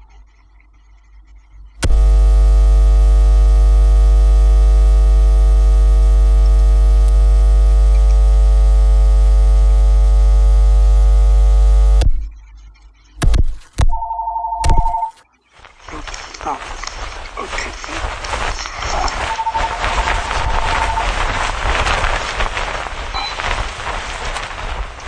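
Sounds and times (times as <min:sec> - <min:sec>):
electrical mains hum: 0:01.8 - 0:15.2.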